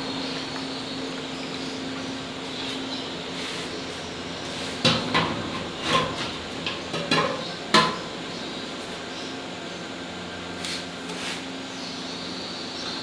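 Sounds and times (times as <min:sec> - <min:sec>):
metal utensils clanking: 0:04.8 - 0:08.2.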